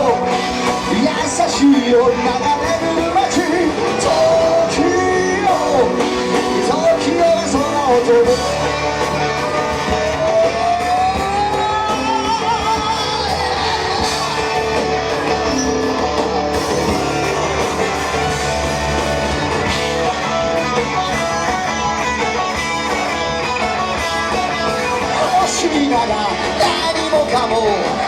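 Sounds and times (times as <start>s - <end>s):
live rock band playing: 0.0s - 28.0s.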